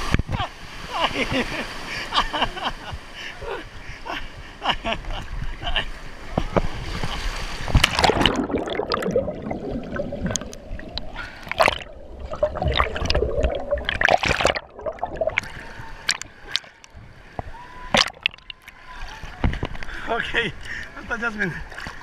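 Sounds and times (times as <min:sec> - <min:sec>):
water splashing and sloshing: 0:00.0 - 0:22.0
gurgling water: 0:05.1 - 0:22.0.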